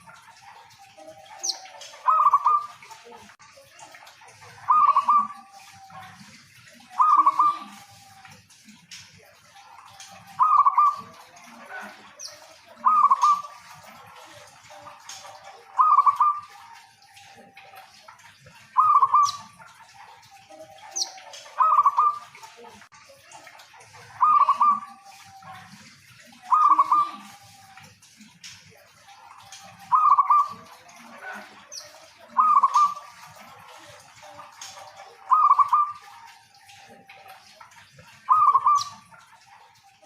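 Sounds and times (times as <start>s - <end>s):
dove burbling coo: 0.0s - 3.0s, 4.6s - 8.1s, 9.6s - 17.4s, 20.7s - 22.3s, 24.2s - 27.6s, 29.2s - 36.9s, 38.2s - 39.6s.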